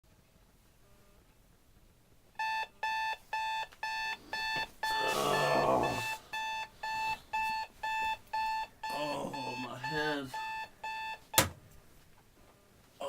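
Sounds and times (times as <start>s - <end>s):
alarm clock beeping: 2.4s - 11.5s.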